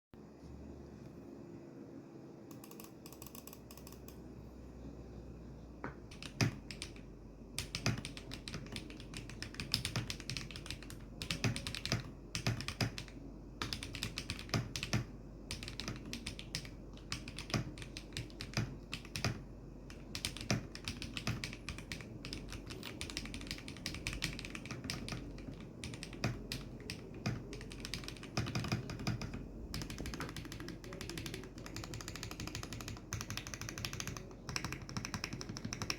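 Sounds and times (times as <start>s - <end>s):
mechanical keyboard typing: 2.5s - 4.2s, 6.1s - 35.9s.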